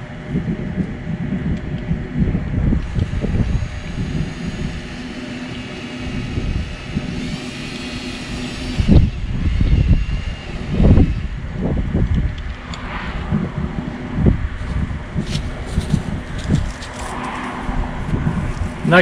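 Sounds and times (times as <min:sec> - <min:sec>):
steady engine hum: 0:00.0 - 0:19.0
wind buffeting microphone: 0:00.0 - 0:19.0.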